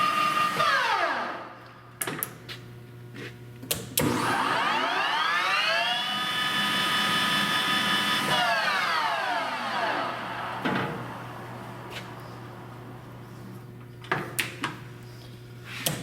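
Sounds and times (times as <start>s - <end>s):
lathe gear whine: 4.0s - 14.1s
low hum: 4.0s - 15.7s.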